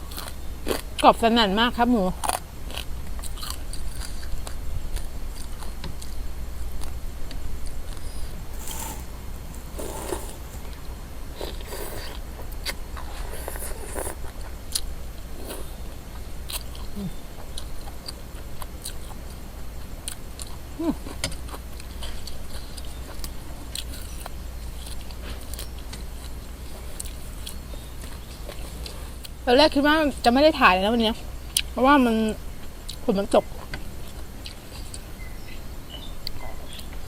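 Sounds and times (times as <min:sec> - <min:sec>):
chewing crispy pork rinds: 0:02.2 - 0:06.1, 0:08.5 - 0:10.8, 0:11.4 - 0:15.9.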